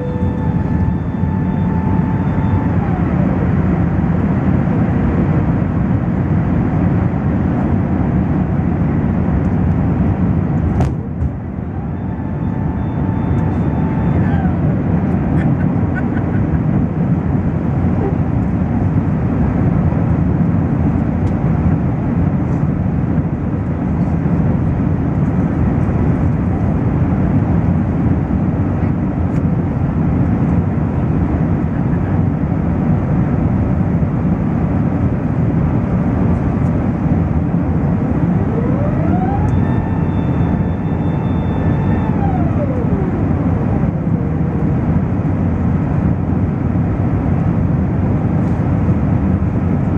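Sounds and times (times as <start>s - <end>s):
pitched tone rising and falling: 0.0s - 3.8s, 11.6s - 14.9s, 37.9s - 45.0s
airliner deep rumble: 0.0s - 49.9s.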